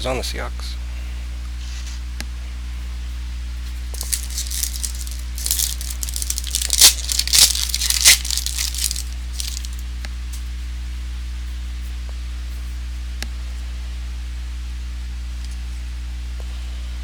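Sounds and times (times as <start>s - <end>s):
wrapper tearing and crinkling: 4.0s - 9.8s.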